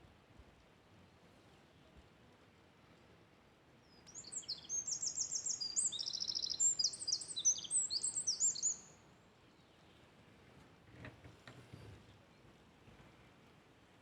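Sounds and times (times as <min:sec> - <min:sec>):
faint background hiss: 0:00.0 - 0:14.0
songbird trilling and chirping: 0:04.1 - 0:09.0.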